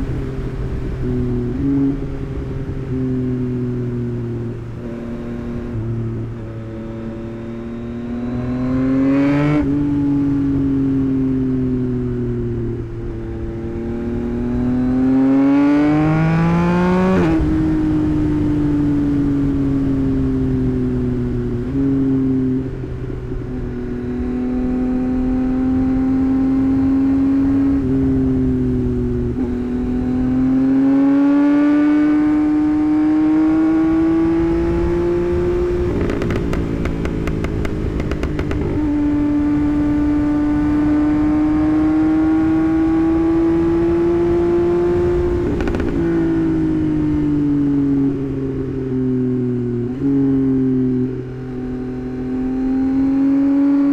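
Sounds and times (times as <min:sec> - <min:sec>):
motorcycle engine accelerating: 0:00.0 - 0:53.9
exhaust crackling: 0:32.4 - 0:41.6, 0:42.9 - 0:47.2.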